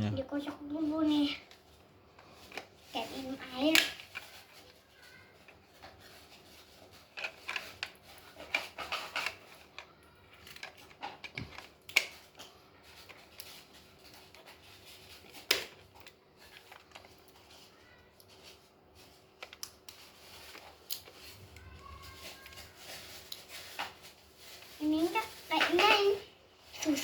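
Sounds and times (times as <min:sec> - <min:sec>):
plastic packaging rustling: 0:00.4 - 0:27.0.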